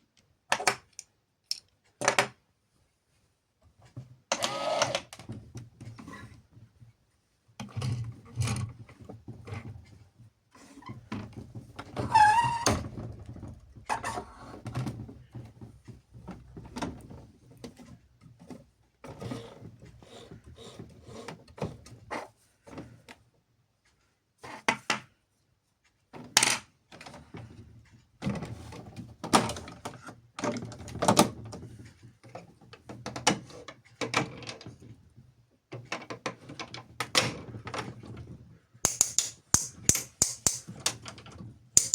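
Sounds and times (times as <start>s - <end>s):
plastic toy clicks and knocks: 38.9s - 41.2s.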